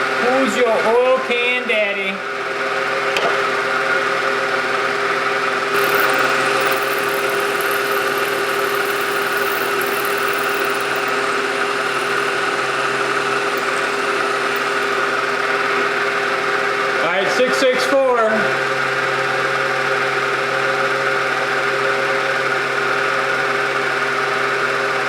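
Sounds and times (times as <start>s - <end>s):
lathe machine hum: 3.4s - 17.0s.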